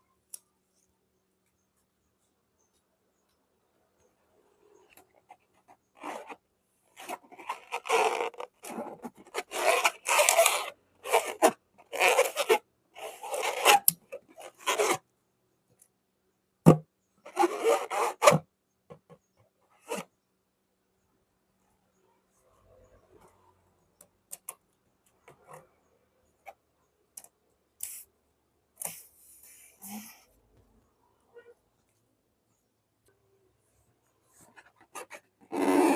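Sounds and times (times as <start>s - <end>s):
balloons rubbing and scraping: 5.1s - 15.0s, 17.2s - 18.4s, 19.8s - 20.1s, 34.3s - 35.9s.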